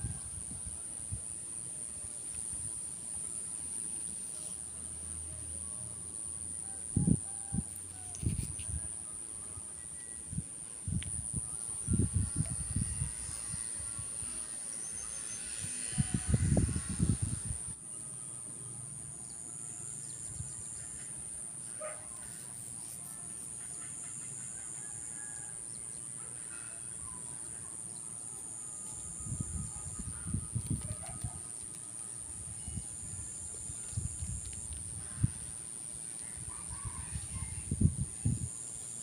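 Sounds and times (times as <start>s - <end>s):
high-pitched whine: 7.8s - 21.2s.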